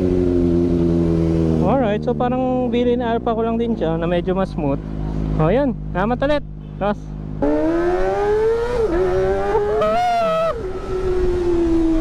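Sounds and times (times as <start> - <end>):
motorcycle engine revving: 7.4 - 12.0.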